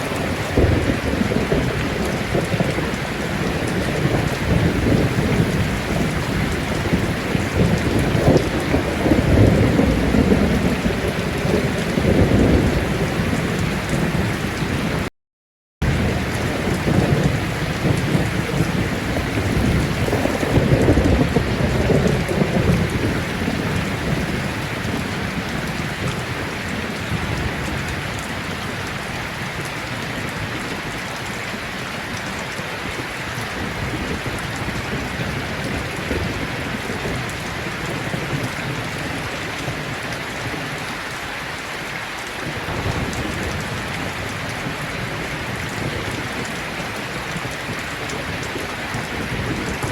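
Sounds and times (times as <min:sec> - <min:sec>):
heavy rain: 0:00.0 - 0:15.1, 0:15.8 - 0:49.9
thunder rolling: 0:00.0 - 0:15.1, 0:15.8 - 0:30.8, 0:42.4 - 0:49.9.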